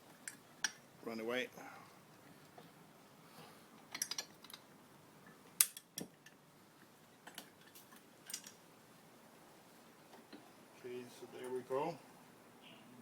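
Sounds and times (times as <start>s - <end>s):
small metal clicks and clinks: 3.9s - 4.6s, 7.2s - 8.6s.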